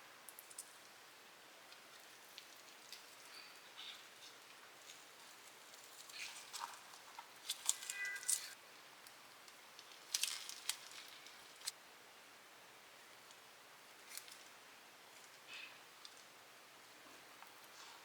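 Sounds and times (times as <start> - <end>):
crinkly rustles and clicks: 1.7 - 11.8, 14.0 - 16.4.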